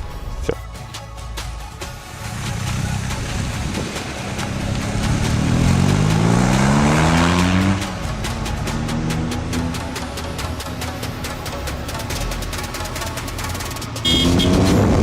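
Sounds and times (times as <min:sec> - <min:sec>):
background music with beat: 0:00.0 - 0:15.0
motorcycle engine accelerating: 0:02.4 - 0:11.1, 0:13.4 - 0:15.0.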